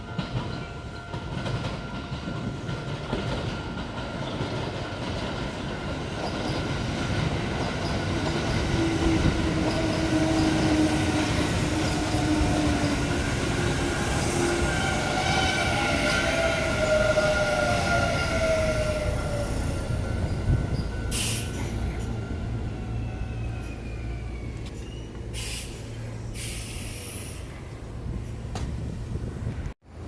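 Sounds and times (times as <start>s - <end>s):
train wheels on rails: 0.0s - 29.8s.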